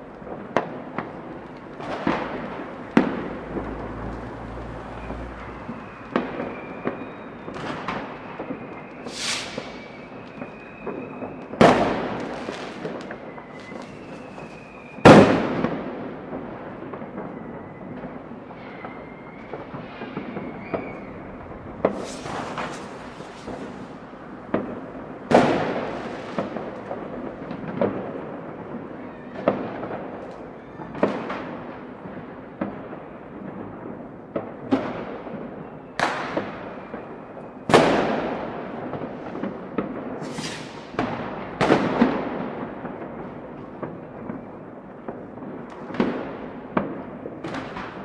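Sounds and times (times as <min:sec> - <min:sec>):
distant fireworks crackling: 0:00.0 - 0:48.0
firework bangs: 0:00.0 - 0:48.0
faint firework whistle: 0:01.8 - 0:15.9, 0:16.7 - 0:26.9, 0:28.3 - 0:31.7, 0:34.7 - 0:39.4, 0:40.1 - 0:42.2, 0:43.9 - 0:44.7.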